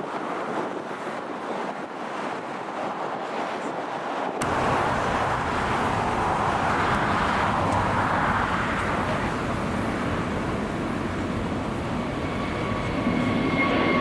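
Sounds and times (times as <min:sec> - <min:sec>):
jet engine roar: 0:04.4 - 0:14.0.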